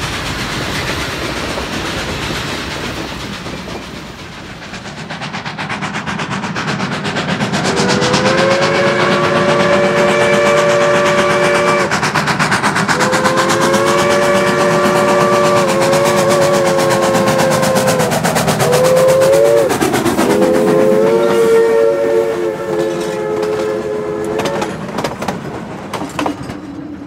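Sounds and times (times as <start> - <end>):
rhythmic pulsing train: 0.0 - 27.0
steam whistle blasts: 7.7 - 12.0, 12.9 - 24.8.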